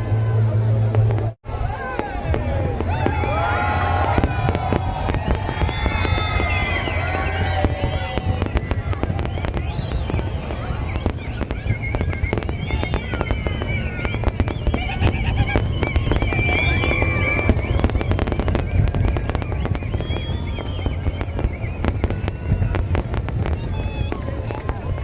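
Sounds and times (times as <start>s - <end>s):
fireworks bangs and crackles: 0.0s - 25.0s
high gliding whistles: 3.0s - 22.3s.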